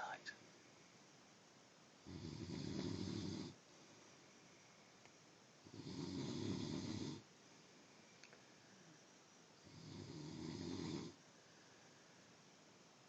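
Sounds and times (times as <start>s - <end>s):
person snoring: 2.0s - 3.6s, 5.6s - 7.2s, 9.6s - 11.2s.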